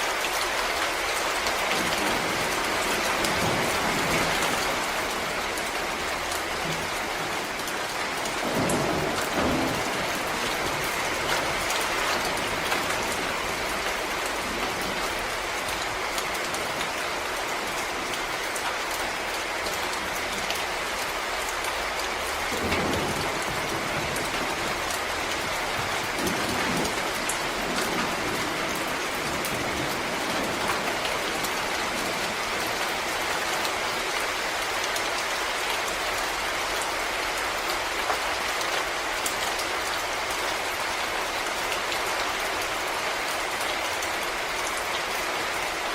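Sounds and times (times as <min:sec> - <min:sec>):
rain on leaves: 0:00.0 - 0:45.9.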